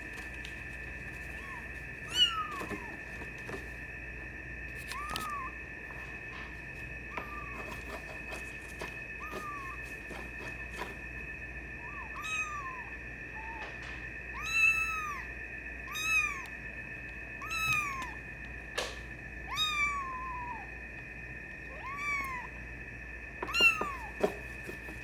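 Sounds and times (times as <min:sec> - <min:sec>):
kitten mewing: 0:01.4 - 0:03.0, 0:04.8 - 0:05.6, 0:09.2 - 0:09.8, 0:11.8 - 0:13.7, 0:14.4 - 0:15.3, 0:15.9 - 0:16.5, 0:17.4 - 0:18.2, 0:19.5 - 0:20.7, 0:21.7 - 0:22.5, 0:23.5 - 0:24.1.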